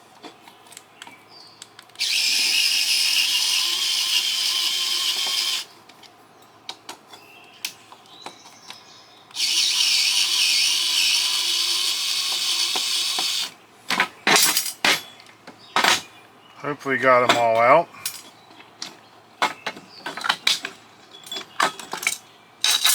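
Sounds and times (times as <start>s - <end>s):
power drill running: 2.0s - 5.7s, 9.4s - 13.6s.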